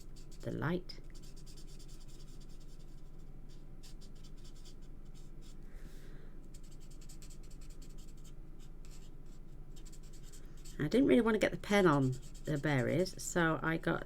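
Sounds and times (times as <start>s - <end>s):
marker scratching on paper: 0.0s - 5.6s, 6.5s - 13.2s.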